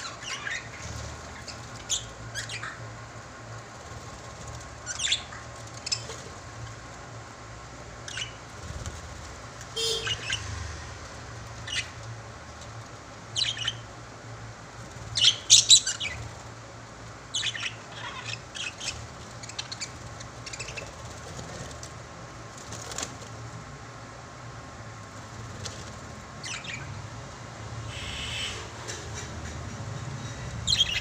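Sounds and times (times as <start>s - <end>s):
lovebirds chirping and squawking: 0.0s - 3.1s, 4.0s - 6.8s, 8.0s - 9.0s, 9.8s - 12.2s, 13.2s - 14.0s, 14.9s - 16.6s, 17.2s - 21.7s, 25.6s - 27.1s, 27.8s - 31.0s.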